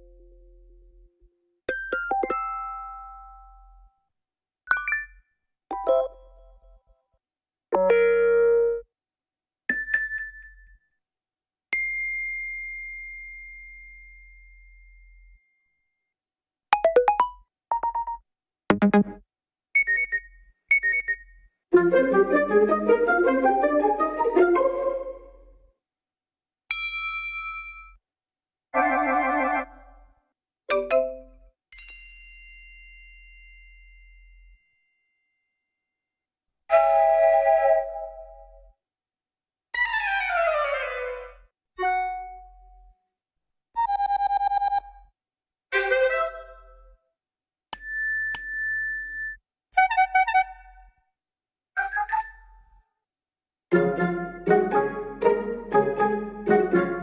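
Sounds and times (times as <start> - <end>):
quick beeps: 19.8 - 21.3
bell-like ding: 26.7 - 28.0.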